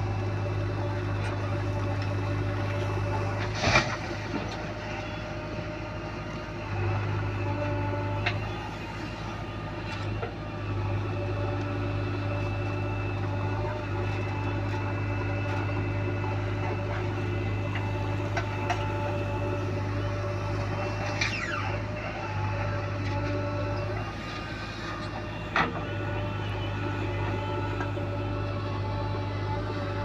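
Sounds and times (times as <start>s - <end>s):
diesel engine running: 0.0s - 30.0s.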